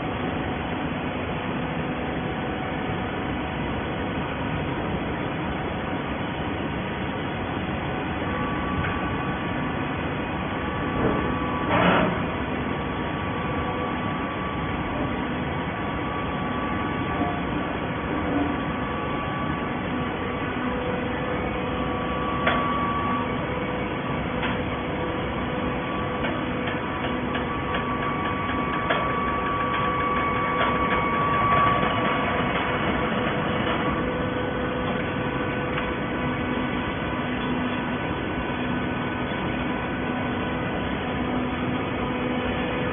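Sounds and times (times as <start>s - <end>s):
baling machine hum: 0.0s - 42.9s
mechanical knocks and clanks: 10.9s - 12.3s, 26.2s - 34.0s.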